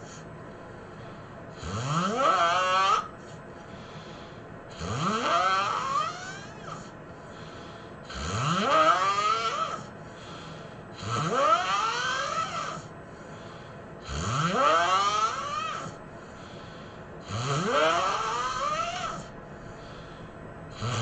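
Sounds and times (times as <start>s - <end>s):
person snoring: 1.5s - 3.1s, 4.7s - 12.9s, 14.0s - 16.0s, 17.2s - 21.0s.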